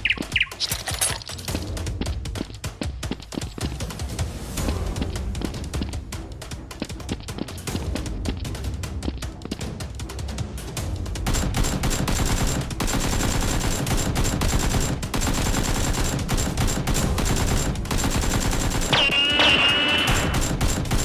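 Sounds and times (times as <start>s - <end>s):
automatic gunfire: 11.3s - 21.0s.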